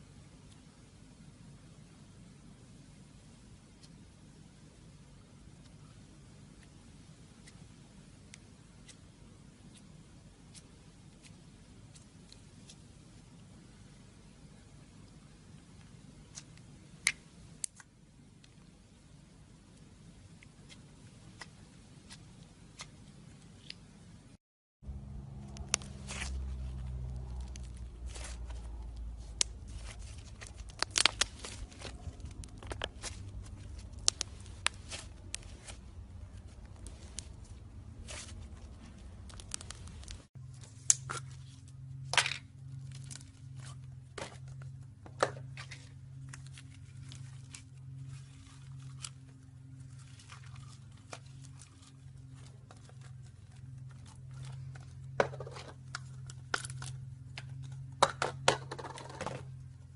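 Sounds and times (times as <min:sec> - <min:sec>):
steady low hum: 0:00.0 - 0:59.9
slime squelching and popping: 0:27.1 - 0:35.8, 0:38.0 - 0:40.3.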